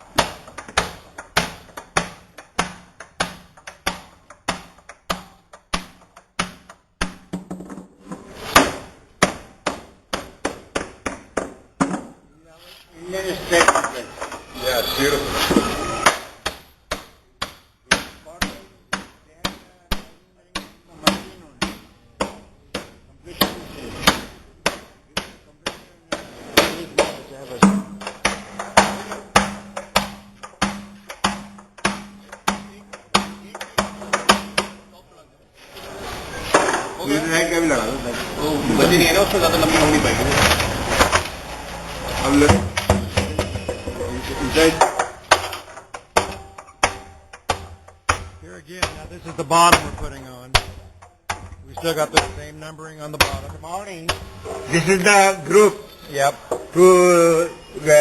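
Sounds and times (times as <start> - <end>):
hammer striking wooden barrel: 0.0 - 7.9, 8.5 - 12.2, 16.0 - 34.9, 42.1 - 54.6.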